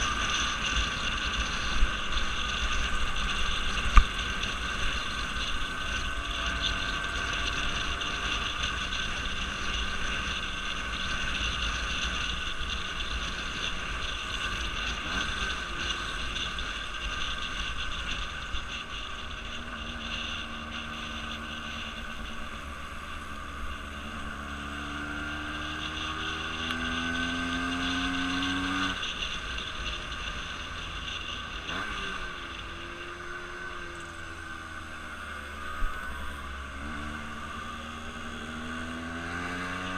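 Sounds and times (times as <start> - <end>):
engine running with high whine: 0.0 - 39.9
second engine rising in pitch: 30.5 - 39.9.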